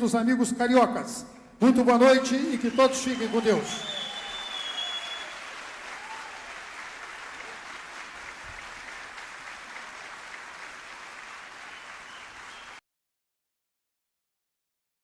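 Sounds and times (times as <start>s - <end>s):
audience applauding: 2.5s - 12.8s.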